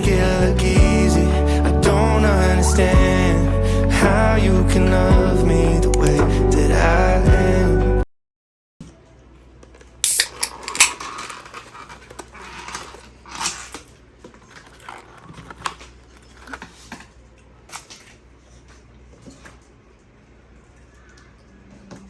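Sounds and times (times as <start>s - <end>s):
small objects clicking and rustling: 10.0s - 16.8s.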